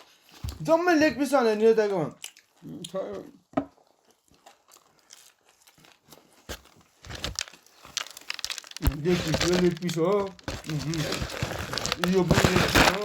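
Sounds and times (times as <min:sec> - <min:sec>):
crisp clicks and crunches: 0:04.3 - 0:13.0
paper packaging crinkling: 0:06.4 - 0:13.0.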